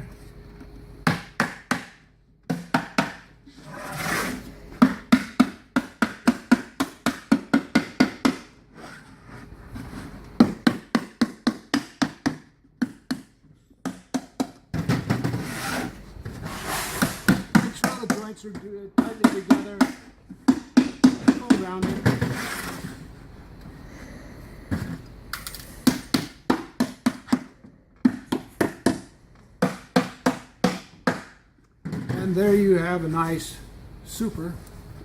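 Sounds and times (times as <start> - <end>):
hammer knocking on wood: 10.4 - 15.4, 17.3 - 22.4, 25.9 - 32.1.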